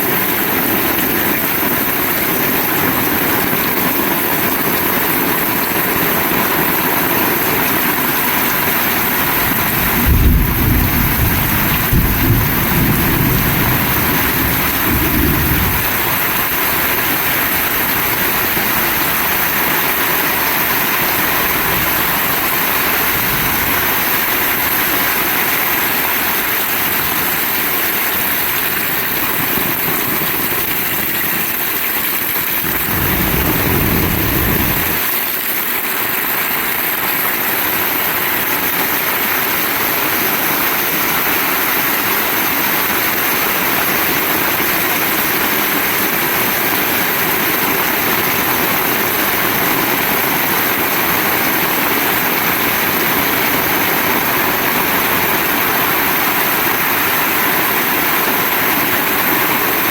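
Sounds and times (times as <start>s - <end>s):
heavy rain: 0.0s - 59.9s
low rumble: 32.7s - 35.0s.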